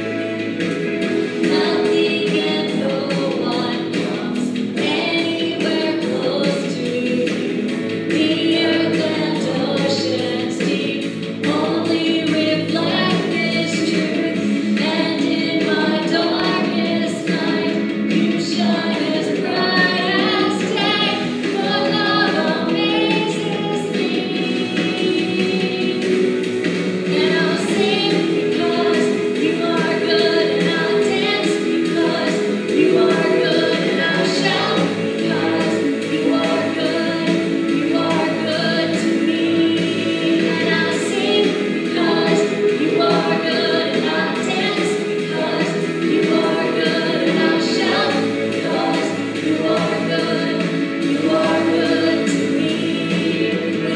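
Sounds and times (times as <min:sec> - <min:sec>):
congregation singing worship song: 0:17.2 - 0:53.9.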